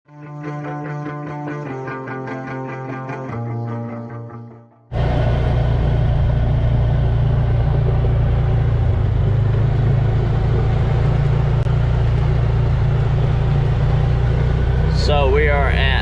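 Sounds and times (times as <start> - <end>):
off-road vehicle engine running: 4.9 - 16.0.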